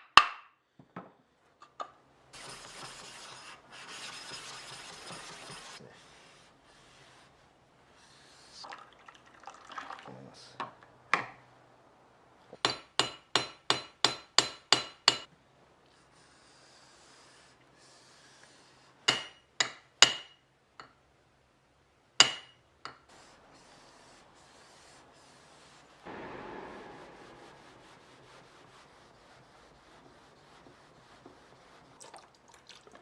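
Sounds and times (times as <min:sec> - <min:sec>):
soft rubbing: 0:23.1 - 0:32.1.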